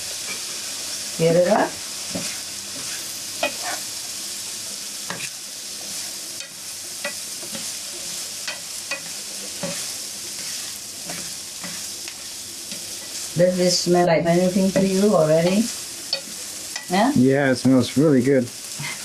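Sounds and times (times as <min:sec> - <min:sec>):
vegetables sizzling in a pan: 0:00.0 - 0:19.0
utensil scraping and clacking on pan: 0:02.1 - 0:03.9, 0:05.1 - 0:05.4, 0:06.4 - 0:07.8, 0:08.4 - 0:13.3, 0:14.6 - 0:17.0, 0:18.8 - 0:19.0.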